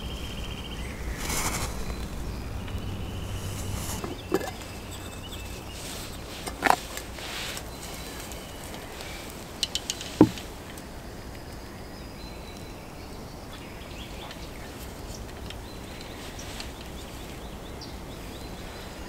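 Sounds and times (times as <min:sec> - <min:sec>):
faint bird calls: 0:00.0 - 0:19.0
small ticks: 0:01.2 - 0:11.7.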